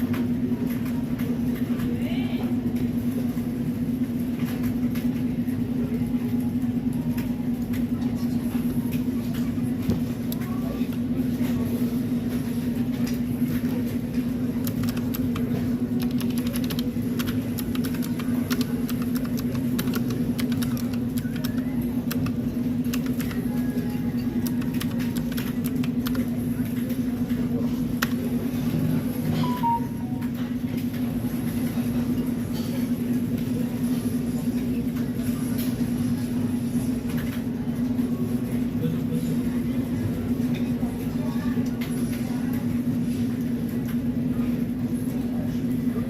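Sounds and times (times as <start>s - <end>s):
steady low hum: 0.0s - 46.0s
keyboard typing clicks: 14.6s - 23.6s, 24.2s - 26.3s.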